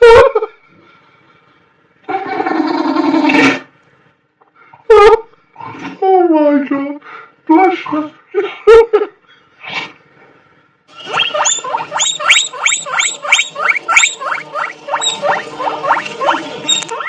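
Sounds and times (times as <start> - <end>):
small animal squeaking: 11.0 - 17.0.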